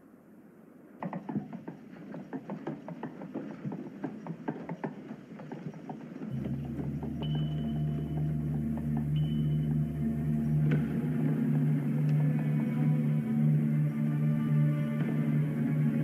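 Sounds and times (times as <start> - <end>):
tricycle wheels clattering on floor: 1.0 - 6.4
low steady hum: 6.3 - 16.0.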